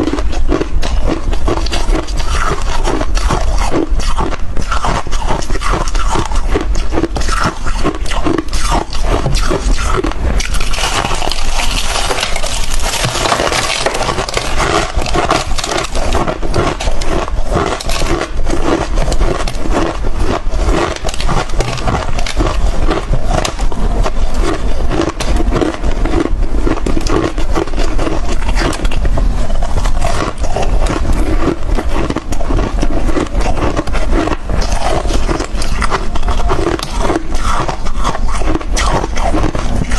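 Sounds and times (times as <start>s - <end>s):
chewing icy frost chunks: 0.0s - 39.9s.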